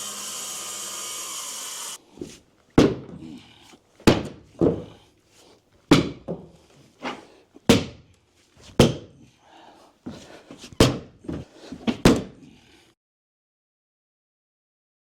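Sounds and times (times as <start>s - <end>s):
heavy knocks on wood: 5.9s - 6.5s.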